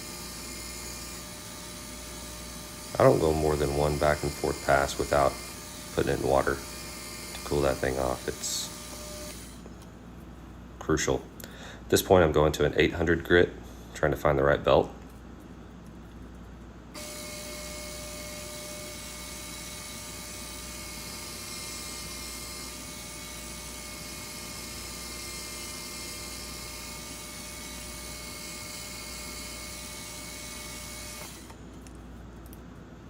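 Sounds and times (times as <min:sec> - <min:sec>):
belt sander motor whine: 0:00.0 - 0:09.8, 0:17.0 - 0:31.6.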